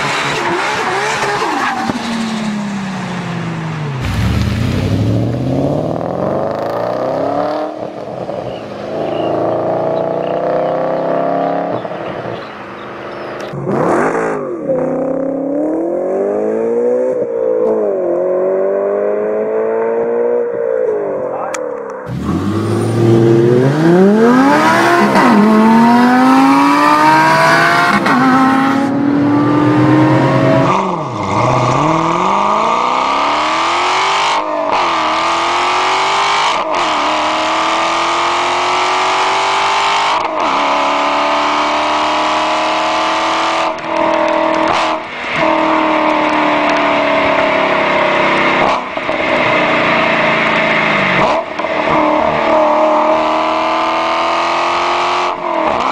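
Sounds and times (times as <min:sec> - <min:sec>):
sports car accelerating hard: 0:00.0 - 0:21.3, 0:22.0 - 0:55.9
muscle car revving through gears: 0:05.0 - 0:12.5, 0:22.1 - 0:55.9.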